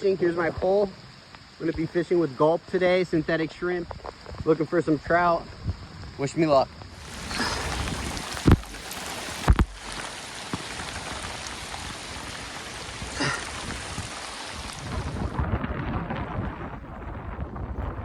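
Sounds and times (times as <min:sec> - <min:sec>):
heavy rain hissing: 0:06.9 - 0:17.1.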